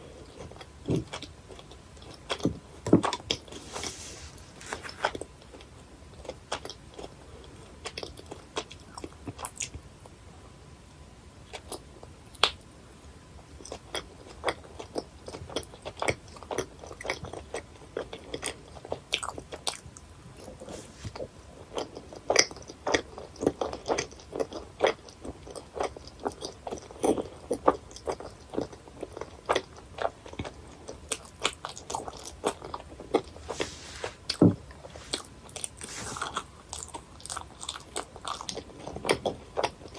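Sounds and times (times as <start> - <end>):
wet chewing clicks and smacks: 21.7 - 33.3.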